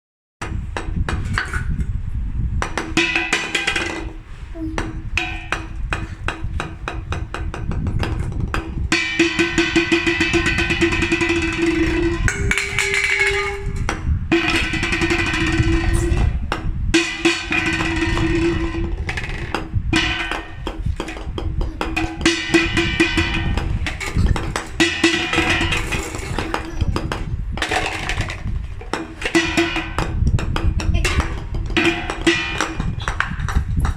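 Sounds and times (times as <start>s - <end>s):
golf balls knocking and clicking: 2.6s - 8.9s, 17.4s - 24.8s, 25.4s - 33.9s.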